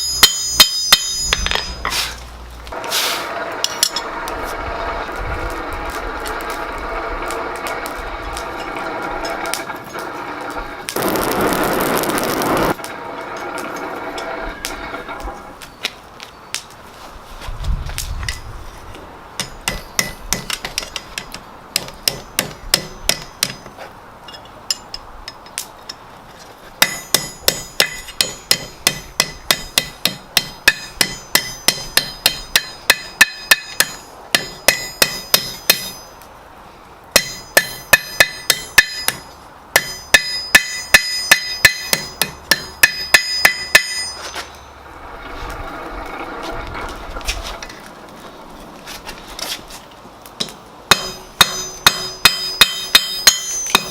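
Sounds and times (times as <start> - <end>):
hammer striking iron on anvil: 0.0 - 2.0, 3.6 - 4.1, 19.4 - 26.0, 26.8 - 36.3, 37.1 - 44.6, 50.4 - 53.9
soft rushing noise: 44.0 - 50.2.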